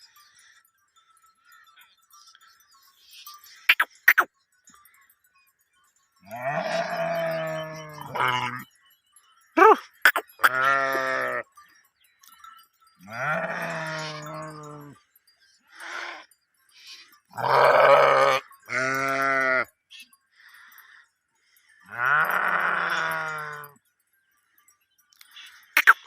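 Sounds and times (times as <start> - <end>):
sheep bleating: 6.3 - 8.7, 9.6 - 11.4, 13.0 - 15.0, 17.4 - 19.7, 21.9 - 23.7.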